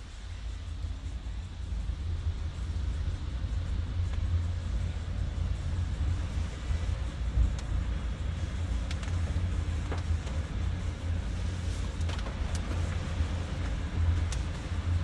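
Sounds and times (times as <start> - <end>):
wind: 0.0 - 15.0
car driving on wet road: 2.6 - 15.0
faint ticks: 7.4 - 7.8.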